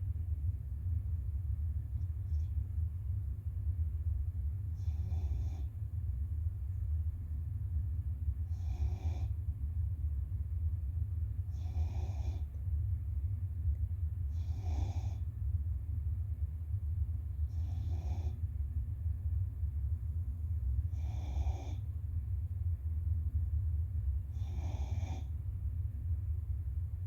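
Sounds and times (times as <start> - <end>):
steady low hum: 0.0 - 27.0
puppy snoring: 4.7 - 5.8, 8.4 - 9.4, 11.4 - 12.6, 14.3 - 15.3, 17.5 - 18.4, 20.9 - 21.8, 24.3 - 25.3.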